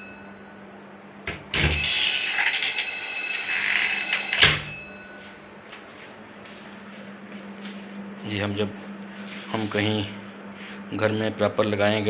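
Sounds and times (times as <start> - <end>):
alarm bell ringing: 0.0 - 0.8, 1.6 - 5.7.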